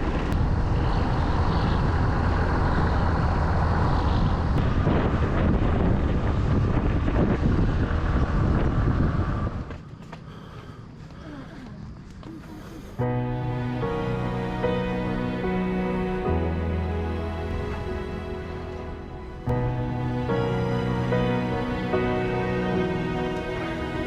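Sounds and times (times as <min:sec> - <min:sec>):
wind noise on microphone: 0:00.0 - 0:10.5
vehicle engine running: 0:00.1 - 0:05.1.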